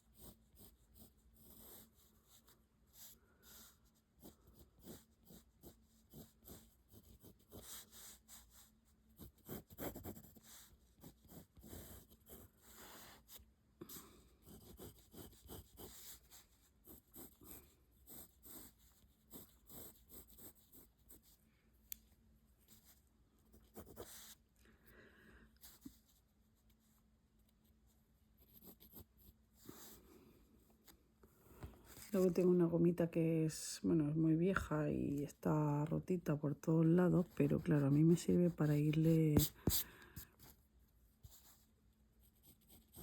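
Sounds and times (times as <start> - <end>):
pencil scratching on card: 0.0 - 21.4, 22.7 - 24.4, 28.4 - 30.0, 37.0 - 40.6, 42.2 - 43.0.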